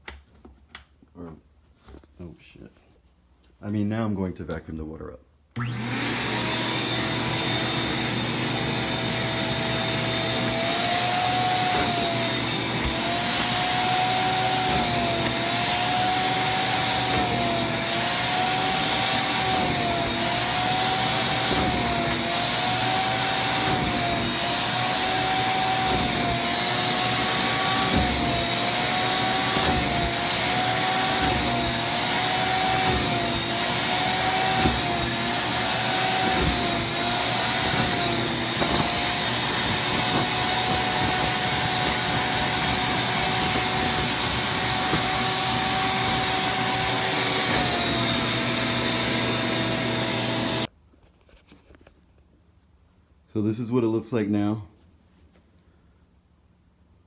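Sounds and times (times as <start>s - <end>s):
vacuum cleaner motor whine: 5.6s - 50.7s.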